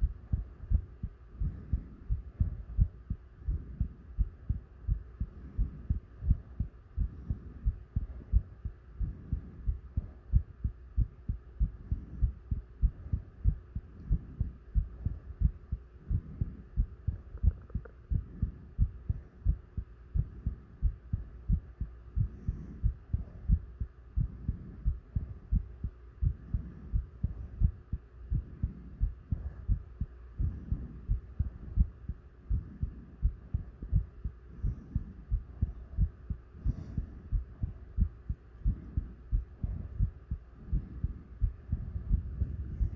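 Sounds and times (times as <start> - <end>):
heartbeat thumps: 0.0 - 42.9
heavy breathing: 22.1 - 42.9.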